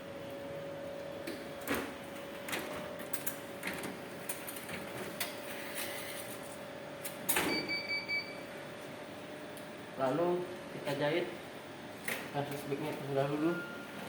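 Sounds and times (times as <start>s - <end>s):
short electronic beep: 13.4s - 13.9s.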